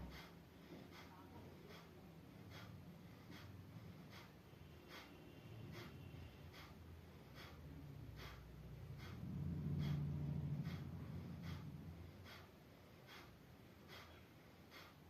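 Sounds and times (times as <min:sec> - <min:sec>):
person breathing hard: 0:00.0 - 0:15.0
low hum: 0:07.6 - 0:12.4.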